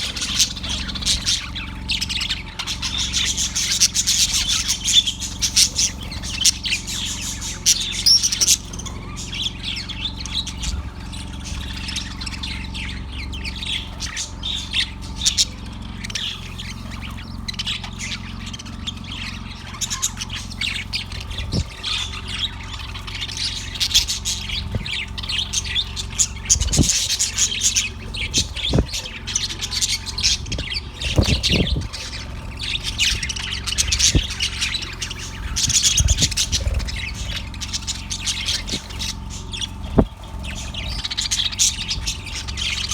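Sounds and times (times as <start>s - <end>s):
budgerigar chirping and squawking: 0.0s - 42.9s
dull low thumps: 24.0s - 27.4s, 30.2s - 34.7s, 35.3s - 42.4s.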